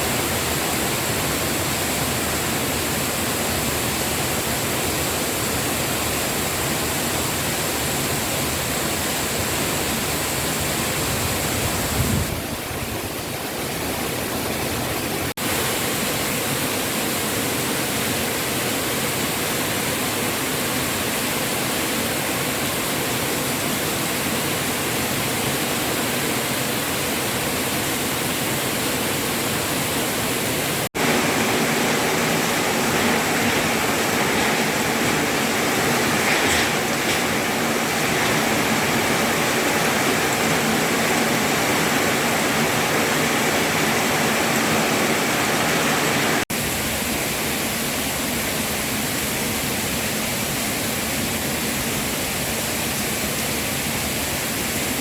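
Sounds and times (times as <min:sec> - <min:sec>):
steady rushing noise: 0:23.5 - 0:47.7.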